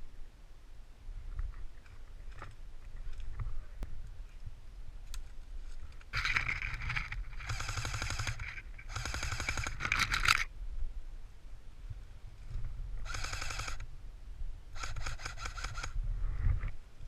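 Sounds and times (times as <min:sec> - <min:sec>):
airsoft guns firing bursts: 0:07.4 - 0:10.0, 0:13.0 - 0:13.8, 0:14.8 - 0:16.0.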